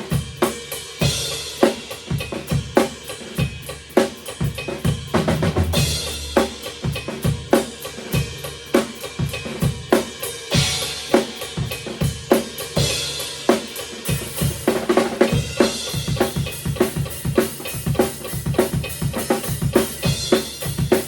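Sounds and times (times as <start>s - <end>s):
rock drum beat: 0.0s - 21.0s
crash cymbal hits: 5.5s - 7.5s.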